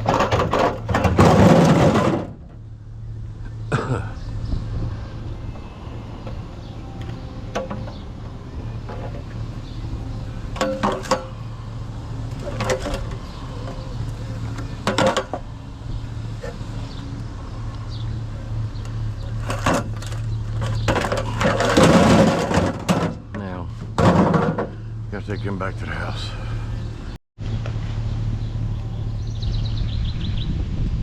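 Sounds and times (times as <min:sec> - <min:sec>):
sharp knocks and clanks: 0:00.0 - 0:02.6, 0:07.0 - 0:08.1, 0:10.6 - 0:11.5, 0:12.2 - 0:15.5, 0:18.8 - 0:24.8
vehicle engine humming: 0:00.0 - 0:31.0.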